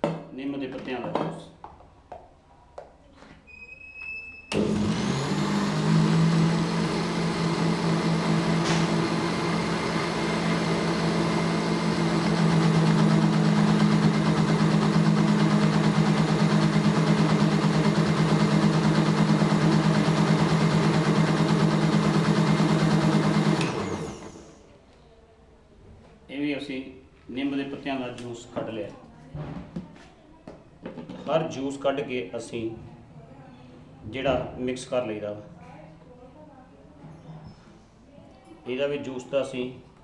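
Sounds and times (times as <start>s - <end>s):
electric mixer grinder running: 4.5s - 24.6s.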